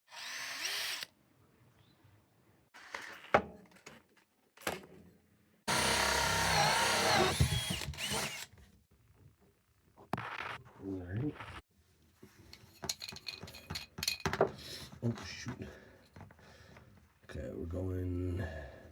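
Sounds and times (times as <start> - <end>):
power drill running: 0.1 - 1.1, 5.7 - 8.5.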